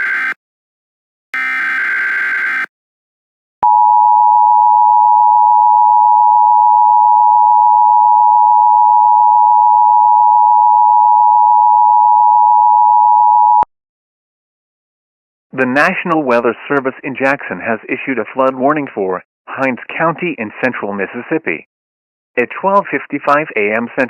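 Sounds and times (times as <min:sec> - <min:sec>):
loud steady electronic tone: 0:00.0 - 0:00.4, 0:01.4 - 0:02.7, 0:03.6 - 0:10.8.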